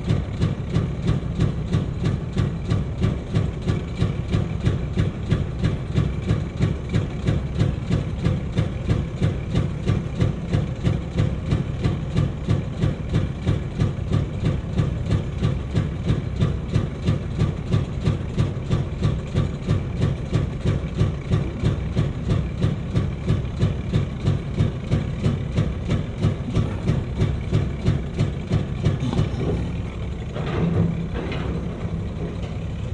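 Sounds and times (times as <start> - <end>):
diesel engine idling: 0.0 - 32.9.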